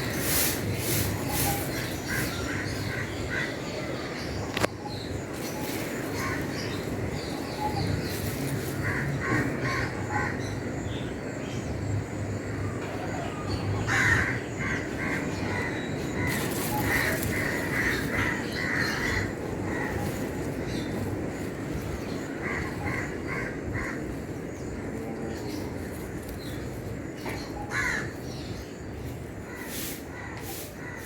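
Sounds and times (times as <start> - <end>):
crows cawing: 1.2 - 3.7, 6.2 - 7.4, 8.5 - 10.8, 13.8 - 20.9, 22.2 - 24.2, 27.6 - 28.2, 29.4 - 31.0.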